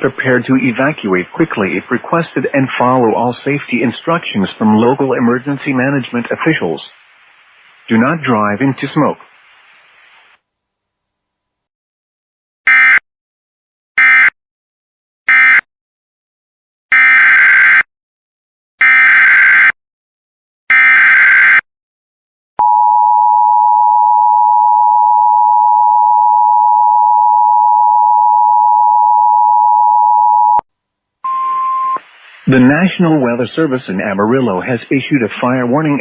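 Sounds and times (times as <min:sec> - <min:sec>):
two-tone attention signal: 0:31.3 - 0:32.0.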